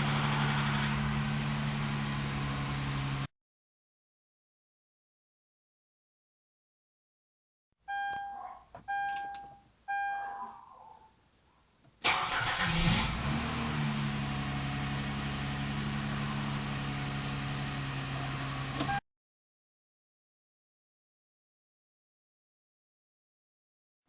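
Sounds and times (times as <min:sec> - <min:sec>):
car engine starting and idling: 0:00.0 - 0:03.3, 0:12.0 - 0:19.0.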